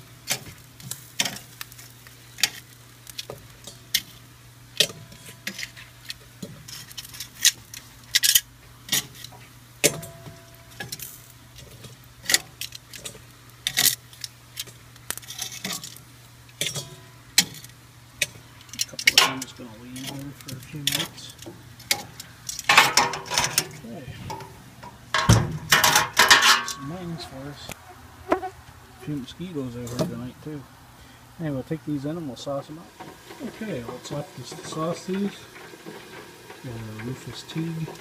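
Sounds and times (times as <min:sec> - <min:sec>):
metal tongs clinking on grill: 0:00.3 - 0:04.2, 0:04.8 - 0:27.3.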